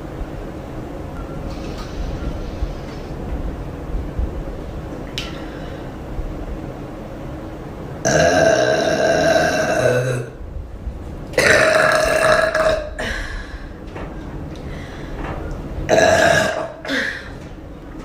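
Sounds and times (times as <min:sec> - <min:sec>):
woman burping: 0:11.4 - 0:13.3, 0:15.9 - 0:17.4.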